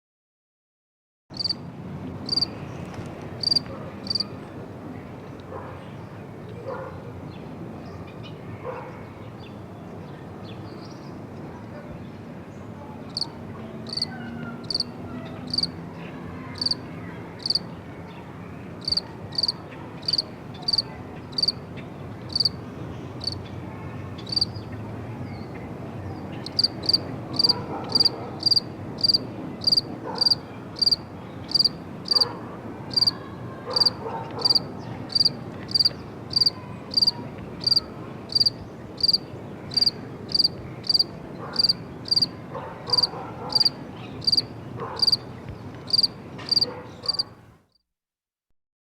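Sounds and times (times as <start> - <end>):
crickets chirping: 1.4 - 1.6, 2.3 - 2.5, 3.4 - 4.3, 13.9 - 14.9, 15.5 - 15.8, 16.6 - 16.8, 17.4 - 17.6, 18.8 - 21.6, 22.3 - 22.6, 23.2 - 23.4, 24.3 - 24.5, 26.4 - 32.2, 32.9 - 33.2, 33.8 - 42.3, 42.9 - 45.2, 45.9 - 47.2.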